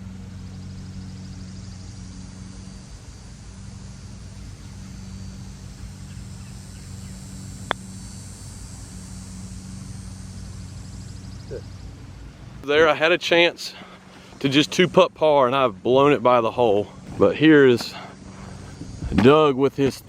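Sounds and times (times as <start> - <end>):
steady low hum: 0.0 - 20.0
putter striking golf ball: 7.2 - 8.2.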